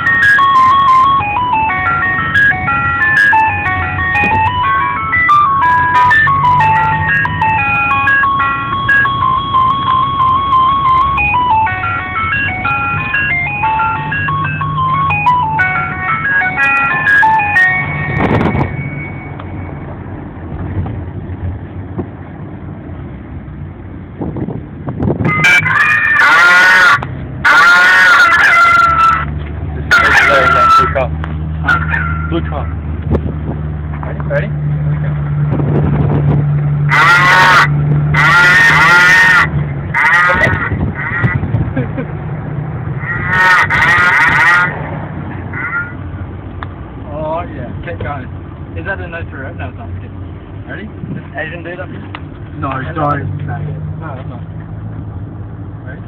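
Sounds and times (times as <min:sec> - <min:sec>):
electronic beeping tune: 0:00.0 - 0:19.8
car engine and road hum: 0:00.0 - 0:56.0
loudspeaker animal-like calls: 0:25.3 - 0:32.8, 0:36.8 - 0:41.5, 0:42.9 - 0:44.9, 0:45.5 - 0:46.0.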